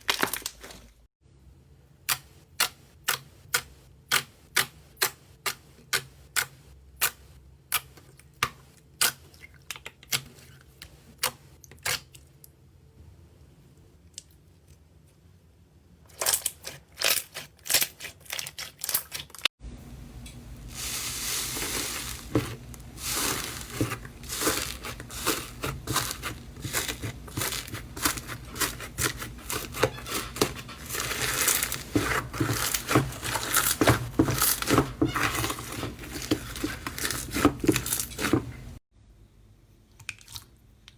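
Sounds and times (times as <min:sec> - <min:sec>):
slime crackling and crinkling: 0:00.0 - 0:01.1, 0:20.6 - 0:38.8.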